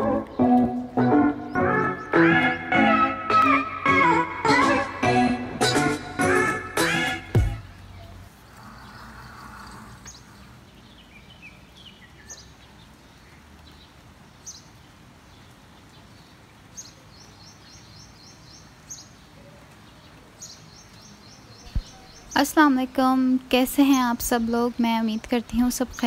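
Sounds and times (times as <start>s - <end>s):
birds chirping: 0.0s - 5.0s, 5.8s - 26.0s.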